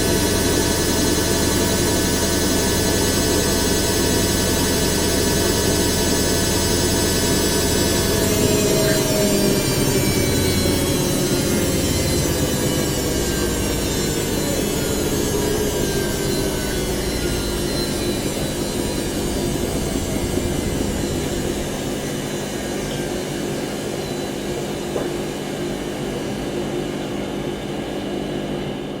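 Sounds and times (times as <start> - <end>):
washing machine spinning: 0.0 - 29.0.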